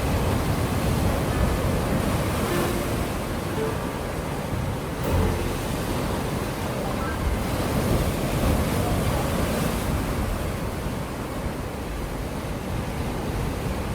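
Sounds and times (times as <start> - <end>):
sea waves breaking on shore: 0.0 - 13.9.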